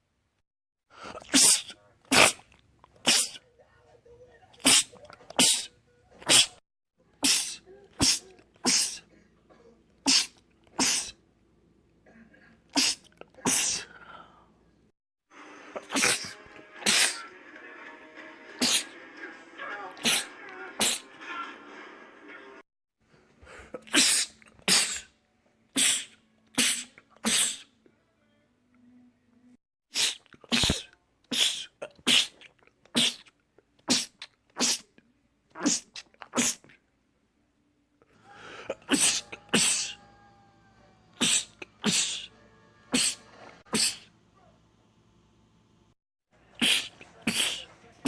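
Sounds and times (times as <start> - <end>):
man sneezing: 1.0 - 3.4, 4.6 - 6.6, 7.2 - 9.1, 10.0 - 11.2, 12.7 - 14.0, 15.8 - 17.2, 18.6 - 18.9, 20.0 - 21.1, 23.5 - 25.2, 25.8 - 27.8, 29.9 - 33.3, 33.9 - 35.0, 35.6 - 36.7, 38.4 - 40.0, 41.2 - 42.3, 42.9 - 44.1, 46.6 - 47.7.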